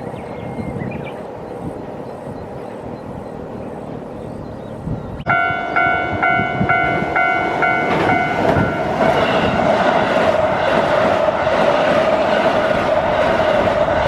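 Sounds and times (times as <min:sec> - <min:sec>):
steady rushing noise: 0:00.0 - 0:14.0
electric train running: 0:01.2 - 0:14.0
level-crossing bell ringing: 0:05.3 - 0:09.4.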